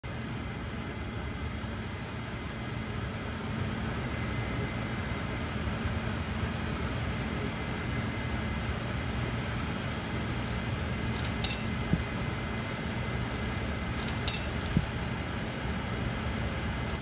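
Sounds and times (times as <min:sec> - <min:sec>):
faint hum: 0:00.0 - 0:17.0
sharp ringing clinks: 0:11.4 - 0:11.8, 0:14.3 - 0:14.7.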